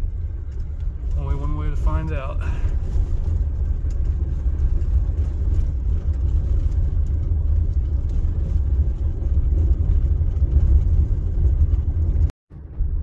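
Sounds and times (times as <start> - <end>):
vehicle rumbling on dirt road: 0.0 - 13.0.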